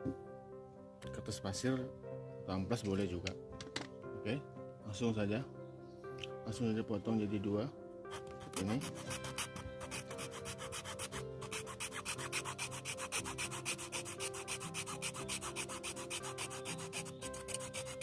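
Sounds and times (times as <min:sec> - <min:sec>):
saw rasping through wood: 0:08.1 - 0:18.0.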